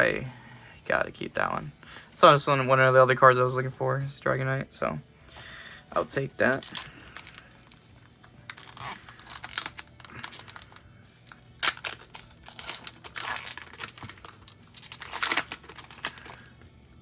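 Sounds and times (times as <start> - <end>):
foil wrapper crinkling: 6.0 - 16.7.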